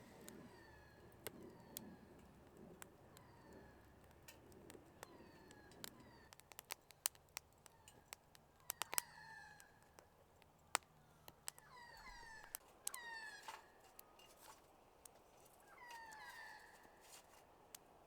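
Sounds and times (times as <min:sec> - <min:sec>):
raindrops dripping onto a tarp: 0:00.0 - 0:13.1
animal downward-gliding calls: 0:11.6 - 0:13.8.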